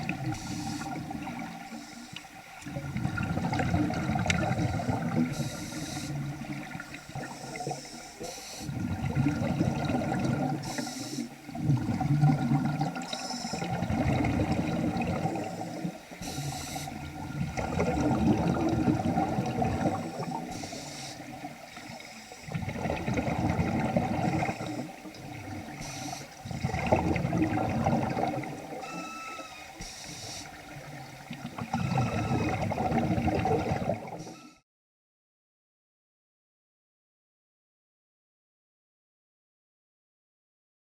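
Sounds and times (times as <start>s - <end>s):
diver breathing through regulator: 0.2s - 2.2s, 5.3s - 6.3s, 10.0s - 11.4s, 14.7s - 17.2s, 19.8s - 21.4s, 25.8s - 26.6s, 28.9s - 30.6s
bubbling rush: 8.7s - 10.7s, 11.5s - 15.9s, 16.8s - 20.4s, 22.5s - 28.7s
regulator whistling tones: 28.7s - 30.5s, 31.8s - 32.6s.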